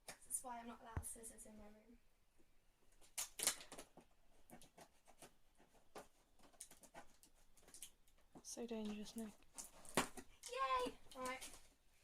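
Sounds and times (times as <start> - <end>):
scissors snipping cardboard: 3.2 - 7.9.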